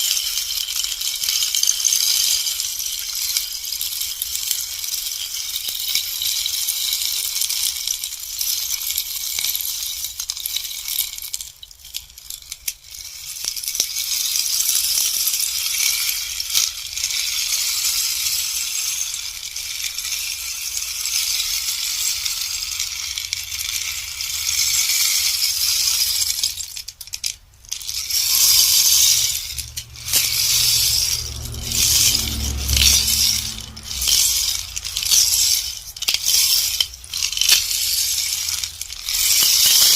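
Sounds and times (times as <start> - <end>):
rainstick rattling: 0.0 - 39.9
low rumble: 29.0 - 35.8.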